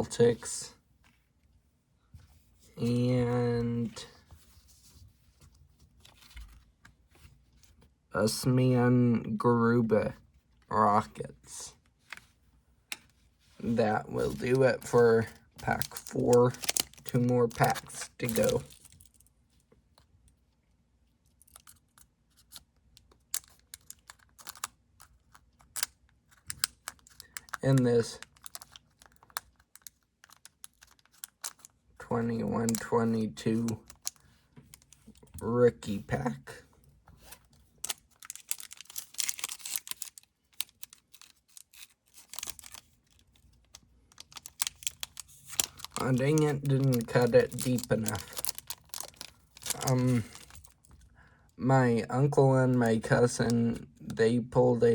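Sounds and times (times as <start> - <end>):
cards handled with taps and crinkles: 3.7 - 7.9, 11.8 - 20.2, 21.4 - 36.1, 36.8 - 51.1.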